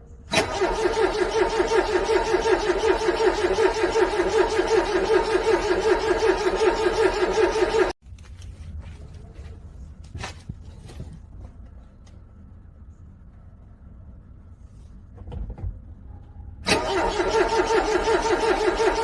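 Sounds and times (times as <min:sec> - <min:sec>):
car engine cranking: 0:00.3 - 0:08.0, 0:16.6 - 0:19.0.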